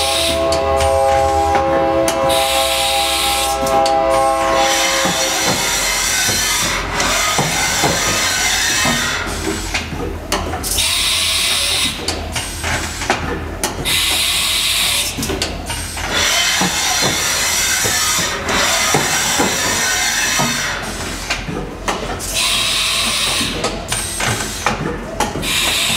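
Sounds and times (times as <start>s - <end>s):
machine hum: 0.0s - 11.4s.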